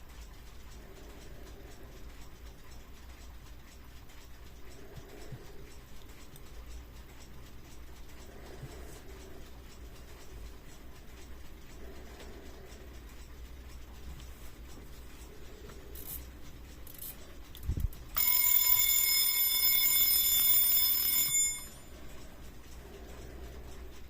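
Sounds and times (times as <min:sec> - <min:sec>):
alarm clock ringing: 0:18.1 - 0:24.0.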